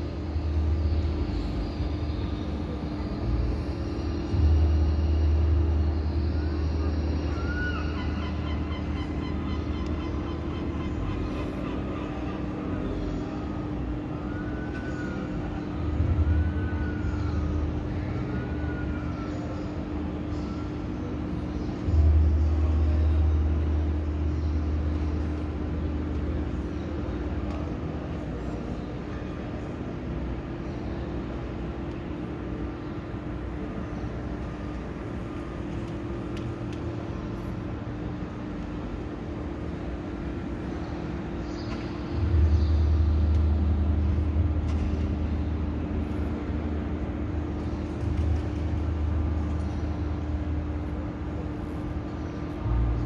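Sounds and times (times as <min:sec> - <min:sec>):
deep rumble: 0:00.0 - 0:07.4, 0:12.7 - 0:18.7, 0:33.3 - 0:53.0
outdoor ambient hum: 0:00.0 - 0:53.0.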